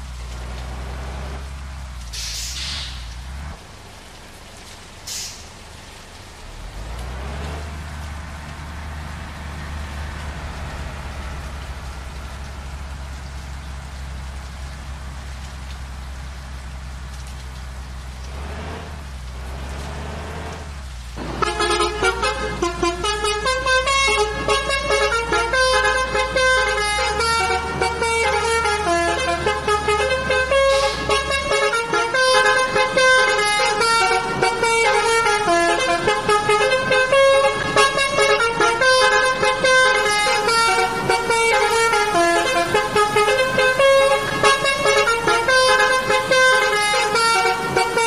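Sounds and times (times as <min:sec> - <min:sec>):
bus engine running: 0:00.0 - 0:48.0
air hiss: 0:02.1 - 0:03.0, 0:05.1 - 0:05.5
multi-tone bus horn tune: 0:21.2 - 0:48.0.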